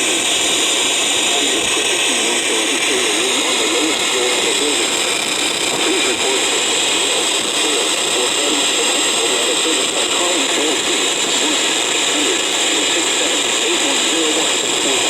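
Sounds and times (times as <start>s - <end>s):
radio static hiss: 0.0s - 15.0s
faint talking voice: 1.2s - 15.0s.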